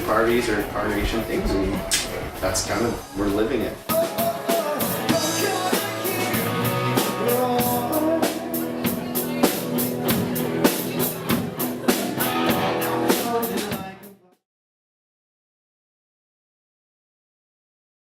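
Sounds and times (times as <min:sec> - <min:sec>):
drum kit hits: 0:00.0 - 0:13.9
rock band playing: 0:00.0 - 0:14.2.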